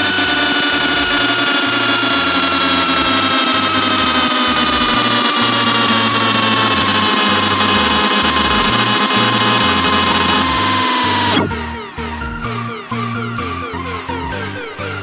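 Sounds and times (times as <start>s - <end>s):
lathe whine: 0.0s - 11.6s.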